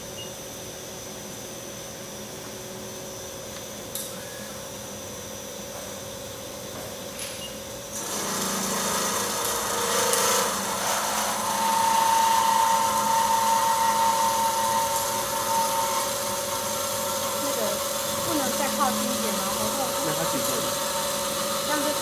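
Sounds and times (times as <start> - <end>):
band saw humming: 7.9 - 22.0
high-pitched whine: 10.4 - 22.0.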